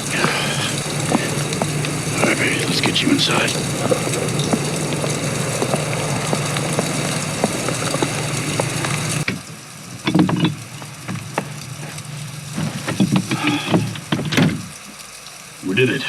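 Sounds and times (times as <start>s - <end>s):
low hum: 0.0s - 14.8s
blizzard wind and blowing snow: 0.0s - 15.0s
knocks and bumps of movement: 10.0s - 14.8s.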